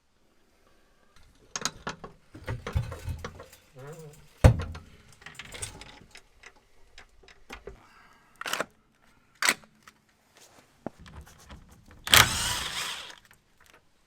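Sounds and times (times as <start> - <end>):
metal tools clinking and knocking: 1.6 - 7.6
metal parts rattling: 2.4 - 6.3, 11.4 - 13.2.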